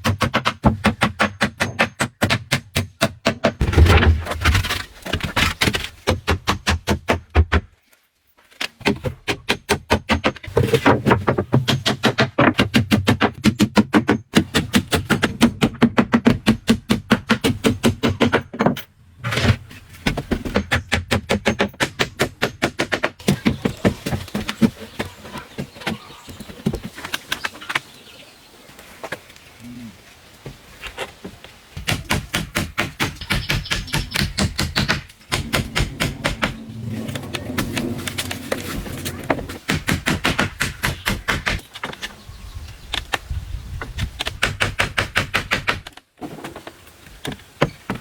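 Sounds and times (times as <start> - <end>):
rapid tapping knocks: 31.8 - 36.6.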